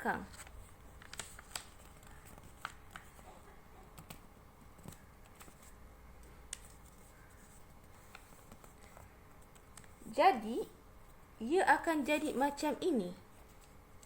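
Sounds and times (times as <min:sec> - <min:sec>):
paper crinkling and folding: 0:00.1 - 0:10.1, 0:13.3 - 0:14.0.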